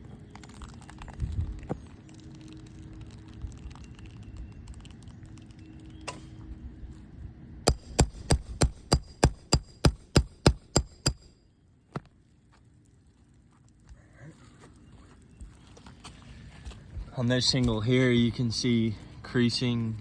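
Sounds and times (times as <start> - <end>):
low steady hum: 0.0 - 20.0
hammer striking metal: 7.7 - 11.4.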